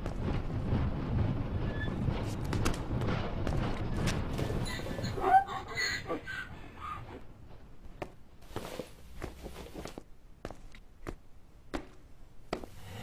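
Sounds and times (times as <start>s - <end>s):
faint footsteps: 7.1s - 13.0s.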